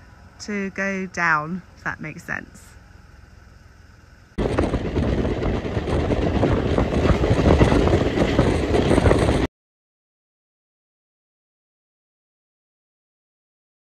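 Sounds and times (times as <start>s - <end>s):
moving car rushing noise: 4.3s - 9.5s
wind buffeting microphone: 4.4s - 9.5s.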